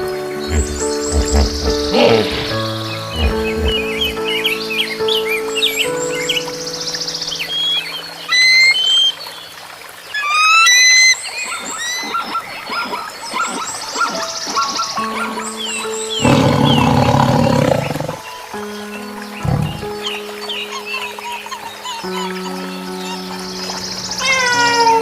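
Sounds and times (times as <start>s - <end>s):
high whistling animal calls: 0.0s - 6.4s, 7.4s - 9.2s, 10.1s - 18.3s, 19.4s - 25.0s
background music: 0.0s - 9.1s, 13.6s - 25.0s
big cat low grunt: 0.5s - 4.2s, 16.2s - 18.2s, 19.4s - 19.9s
big cat roaring: 0.5s - 4.2s, 16.2s - 18.2s, 19.4s - 19.9s.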